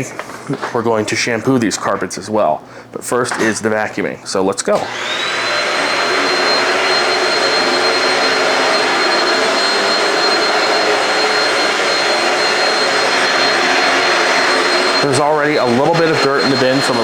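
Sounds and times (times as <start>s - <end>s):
stick vacuum running: 4.8s - 17.0s.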